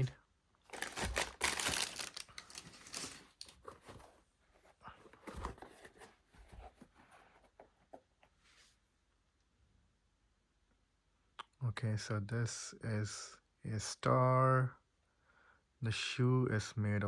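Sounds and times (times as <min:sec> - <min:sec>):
cardboard and paper rustling: 0:00.7 - 0:08.4.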